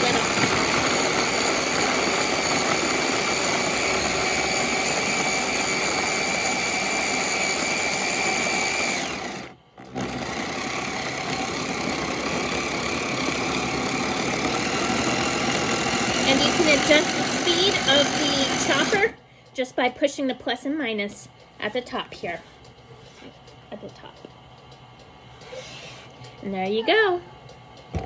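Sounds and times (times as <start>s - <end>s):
food processor chopping cookies: 0.0s - 19.2s.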